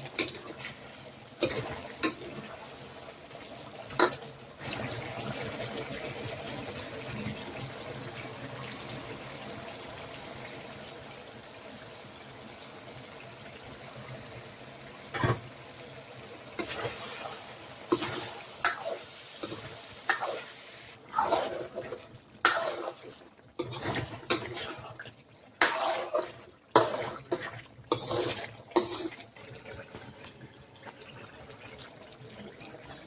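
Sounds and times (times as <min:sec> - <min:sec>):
kitchenware clattering: 0:00.0 - 0:00.7.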